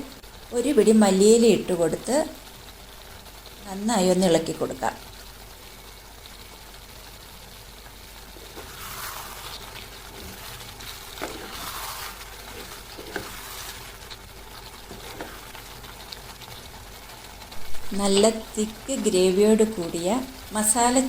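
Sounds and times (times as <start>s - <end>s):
spoon stirring thick gravy: 8.4s - 16.7s.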